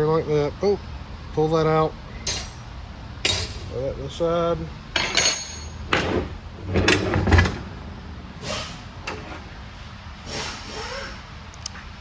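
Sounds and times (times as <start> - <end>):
metal parts clanking and scraping: 2.3 - 3.9, 4.9 - 7.8, 8.4 - 9.6.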